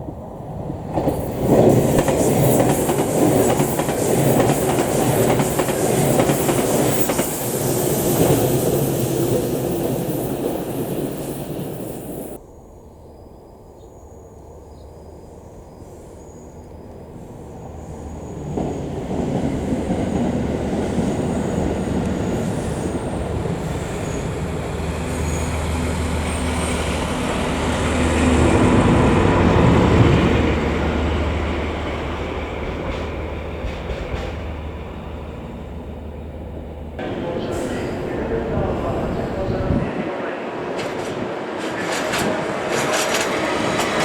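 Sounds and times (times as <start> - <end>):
rumbling train wheels: 0.0 - 12.4, 16.7 - 44.0
diesel train engine hum: 14.0 - 44.0.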